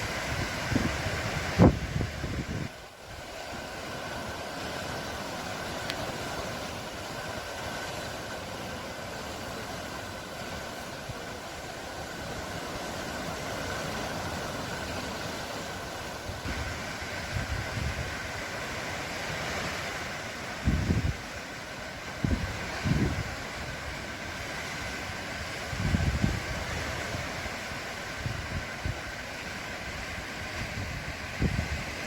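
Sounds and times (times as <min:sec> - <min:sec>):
sea waves washing onto shore: 0:00.0 - 0:32.0.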